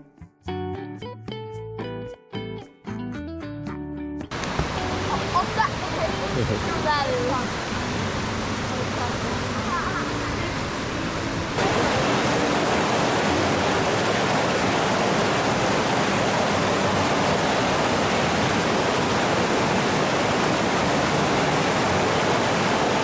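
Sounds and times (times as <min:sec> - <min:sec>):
river and waterfalls rushing: 0:04.3 - 0:23.0.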